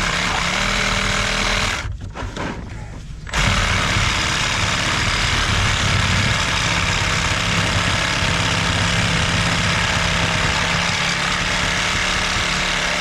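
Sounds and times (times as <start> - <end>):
electric power tool running: 0.0 - 1.9, 3.3 - 13.0.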